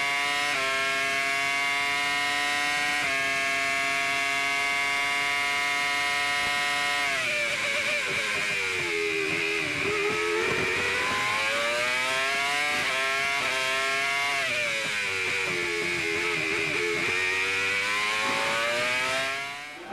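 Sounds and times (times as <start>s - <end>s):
racing car engine: 0.0s - 19.9s.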